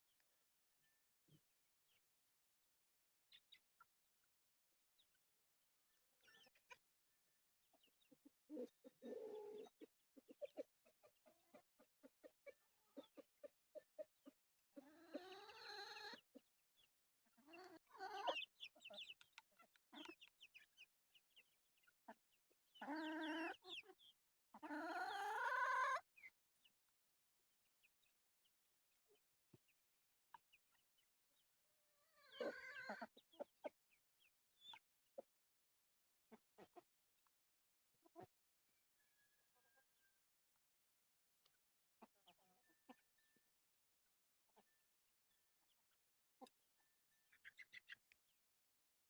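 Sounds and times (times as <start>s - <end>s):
chickens clucking: 6.2s - 6.9s, 7.6s - 26.4s, 32.0s - 35.3s, 36.2s - 37.3s, 38.0s - 38.4s, 41.4s - 43.4s, 47.2s - 48.2s.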